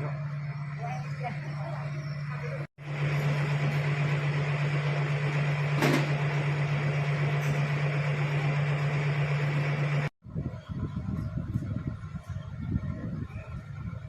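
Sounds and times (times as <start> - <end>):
machine hum: 0.0 - 10.1.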